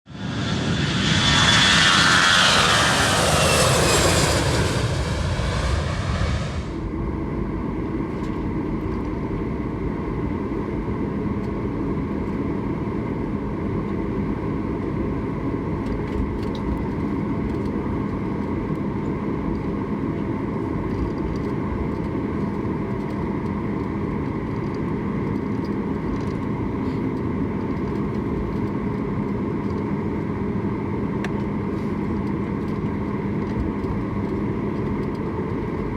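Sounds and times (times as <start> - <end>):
loud rushing with falling pitch: 0.1 - 6.8
low hum: 0.1 - 8.4
jet engine drone in cabin: 0.1 - 35.9.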